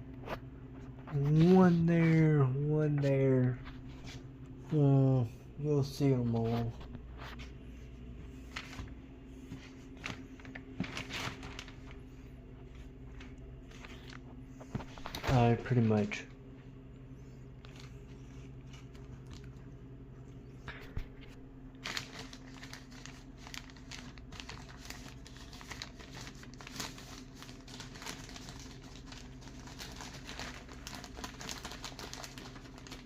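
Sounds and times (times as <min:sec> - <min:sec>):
steady low hum: 0:00.0 - 0:33.0
plastic sheeting crinkling: 0:05.8 - 0:16.3, 0:20.8 - 0:33.0.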